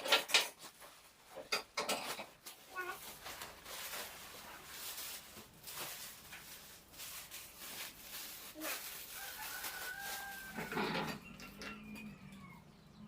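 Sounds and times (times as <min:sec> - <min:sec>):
packaging rustling and crinkling: 0:02.1 - 0:11.2
rooster crowing: 0:09.1 - 0:12.8.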